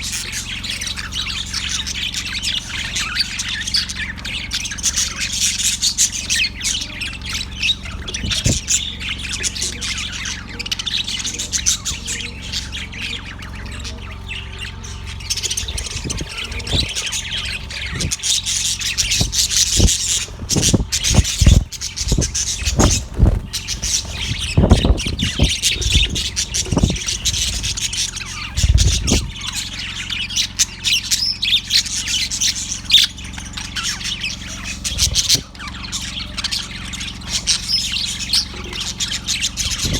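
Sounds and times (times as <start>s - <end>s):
budgerigar chirping and chattering: 0.0s - 39.9s
low thumps: 7.9s - 8.8s, 15.4s - 29.4s.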